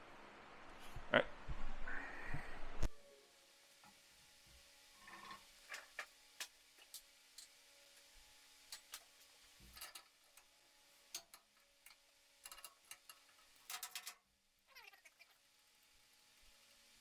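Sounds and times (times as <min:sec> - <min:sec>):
clicks of metal tools handled: 0:08.7 - 0:10.5, 0:11.1 - 0:14.3.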